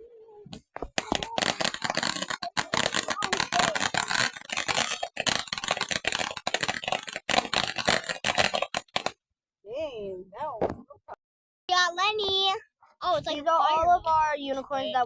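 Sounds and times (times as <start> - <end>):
fireworks crackling: 0.5 - 9.2.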